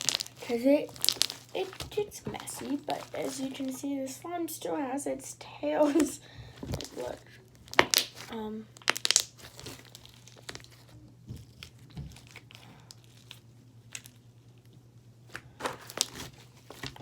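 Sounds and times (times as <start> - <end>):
sticky slime clicks and crackles: 0.0 - 1.8, 7.6 - 10.7.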